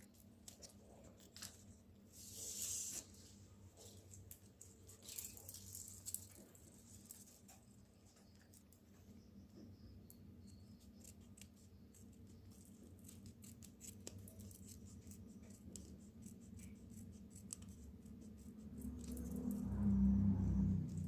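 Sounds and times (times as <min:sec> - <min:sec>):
low steady hum: 0:00.0 - 0:21.0
hands handling plastic film: 0:03.8 - 0:07.5.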